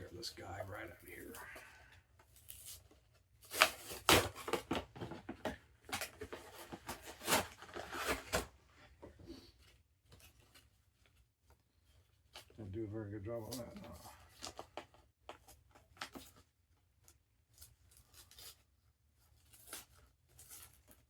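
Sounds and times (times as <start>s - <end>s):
packaging being torn open: 3.4s - 4.6s.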